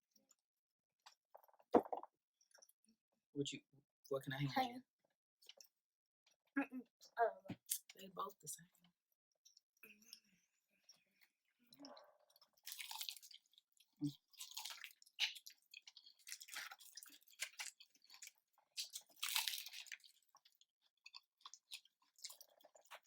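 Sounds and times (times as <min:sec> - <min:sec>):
crunchy chewing of fried chicken: 0:11.8 - 0:23.0.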